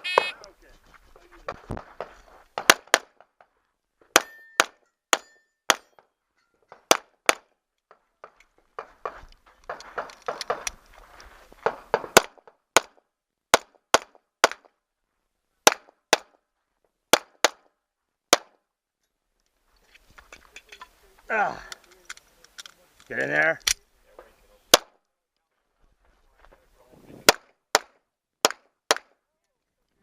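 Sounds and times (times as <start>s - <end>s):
bullets clanging on steel: 4.2s - 6.8s.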